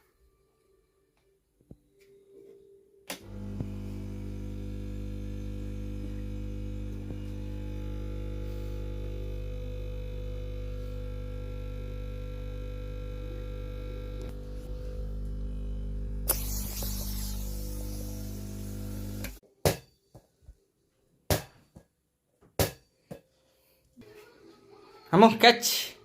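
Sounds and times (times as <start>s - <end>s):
air compressor humming: 3.2s - 19.4s.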